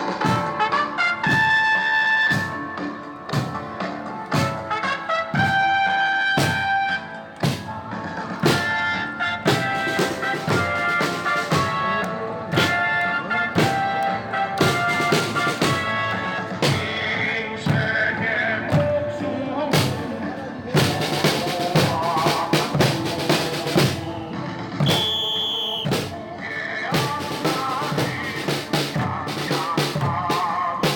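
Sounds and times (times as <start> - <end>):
trumpets and trombones playing: 0.0 - 2.8, 4.3 - 7.2, 8.4 - 16.8, 24.8 - 26.1
steady drum beat: 7.4 - 30.9.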